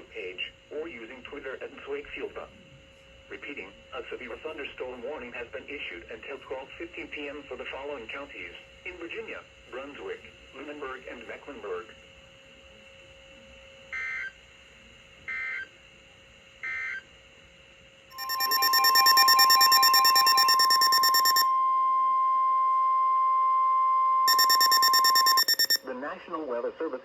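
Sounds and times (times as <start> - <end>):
pulsing electronic alarm buzz: 18.2 - 21.5, 24.3 - 25.8
short data bursts: 18.2 - 21.5, 24.3 - 25.8
steady warning alarm tone: 18.2 - 21.5, 24.3 - 25.8
warbling two-tone chirp: 18.2 - 21.5, 24.3 - 25.8.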